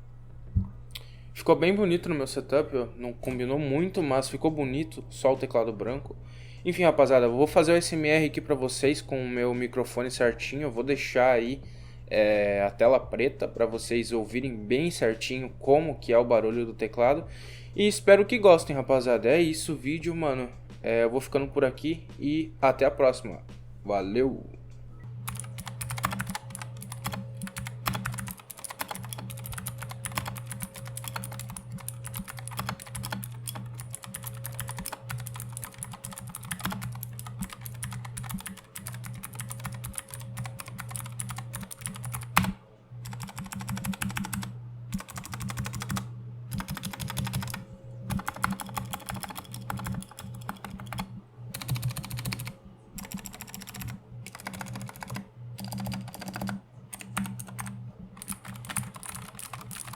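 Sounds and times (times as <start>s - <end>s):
low steady hum: 0.0s - 59.9s
mechanical keyboard typing: 25.2s - 59.9s.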